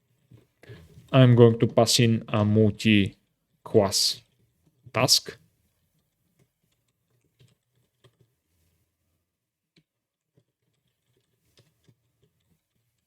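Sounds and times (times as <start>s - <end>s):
faint keyboard typing: 3.1s - 8.8s, 9.7s - 13.0s.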